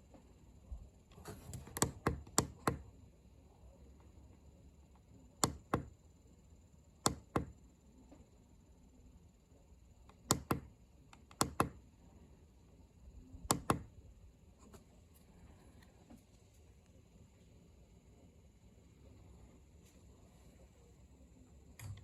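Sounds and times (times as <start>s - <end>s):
paired sharp clicks: 5.4s - 5.9s, 7.0s - 7.5s, 10.1s - 11.8s, 13.4s - 13.9s
faint high whine: 11.8s - 22.0s.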